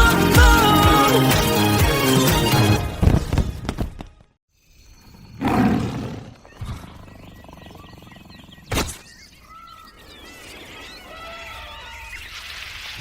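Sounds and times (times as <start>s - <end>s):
faint bird chirps: 4.6s - 13.0s
roar-like animal call: 5.1s - 12.0s.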